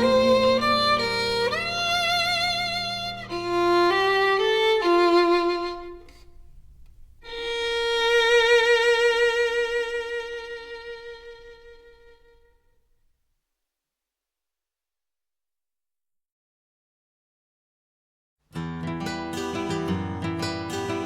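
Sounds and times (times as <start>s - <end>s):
violin melody with vibrato: 0.0s - 6.4s, 7.2s - 12.5s
violin long held note: 0.0s - 6.6s
soft sustained accompaniment: 0.0s - 12.5s.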